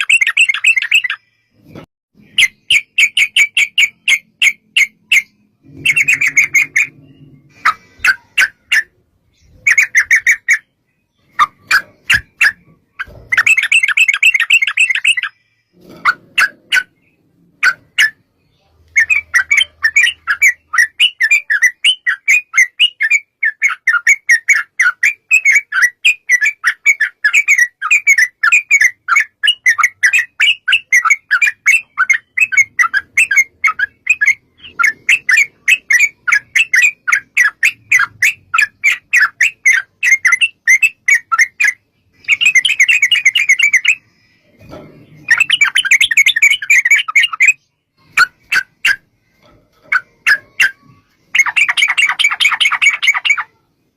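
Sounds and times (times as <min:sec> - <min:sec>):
bird chattering bursts: 0:02.3 - 0:18.2, 0:45.2 - 0:49.0, 0:49.9 - 0:53.6.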